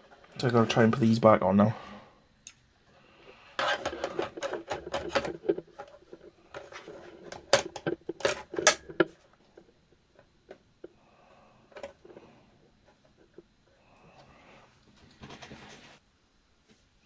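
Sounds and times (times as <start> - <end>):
small tools clicking and rattling: 3.6 - 9.2.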